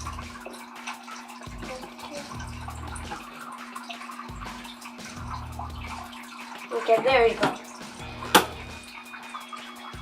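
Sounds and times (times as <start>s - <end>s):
aquarium filter hum: 0.0s - 6.6s
water trickling and splashing: 0.0s - 10.0s.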